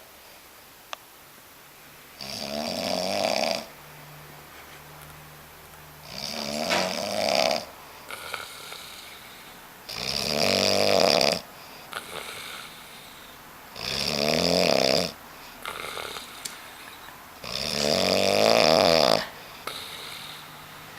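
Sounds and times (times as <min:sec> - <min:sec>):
man snoring: 0:02.2 - 0:03.7, 0:06.0 - 0:09.3, 0:09.9 - 0:16.5, 0:17.4 - 0:20.5.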